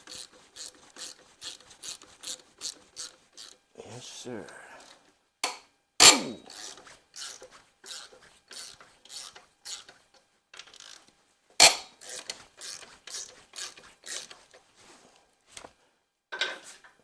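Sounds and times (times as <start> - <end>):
ratchet wrench clicking: 0.0 - 3.6, 6.0 - 10.0, 10.6 - 14.5.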